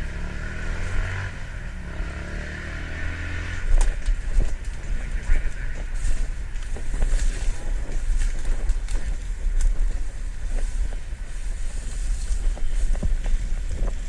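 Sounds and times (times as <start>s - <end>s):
wind rumbling on microphone: 0.0s - 14.0s.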